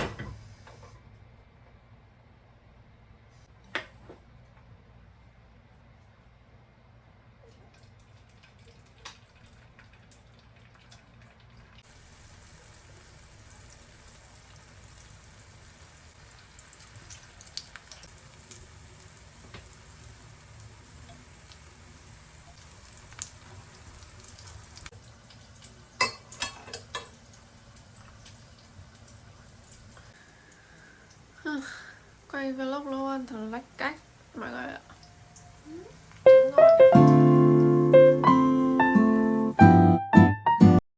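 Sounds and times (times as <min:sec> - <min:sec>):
food sizzling in a pan: 0:11.8 - 0:39.5.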